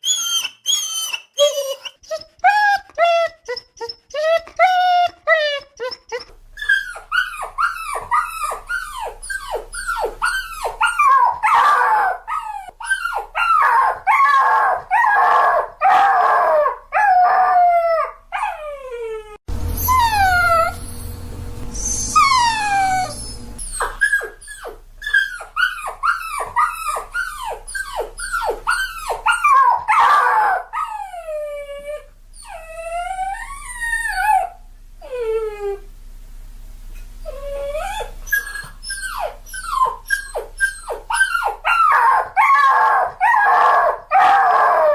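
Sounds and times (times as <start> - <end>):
puppy whimpering and yelping: 0.0 - 35.8, 37.2 - 44.9.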